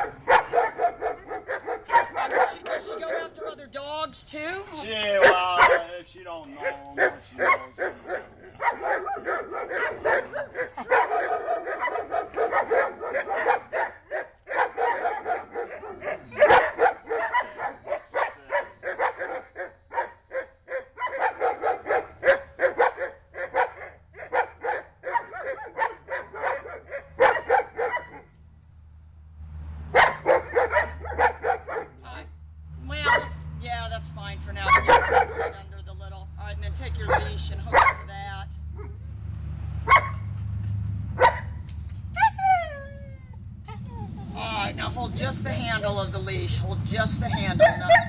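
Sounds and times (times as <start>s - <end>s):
dog barking rapidly: 0.0s - 3.6s, 5.0s - 6.0s, 6.6s - 28.3s, 29.9s - 32.0s, 33.0s - 33.4s, 34.6s - 35.7s, 37.0s - 38.2s, 39.8s - 40.3s, 41.2s - 42.6s, 47.2s - 48.0s.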